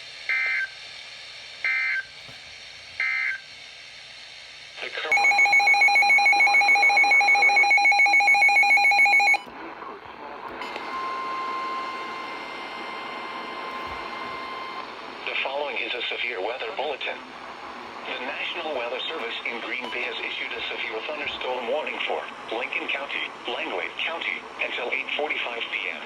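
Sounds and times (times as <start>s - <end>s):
rapidly pulsing electronic alert beep: 5.1s - 9.4s.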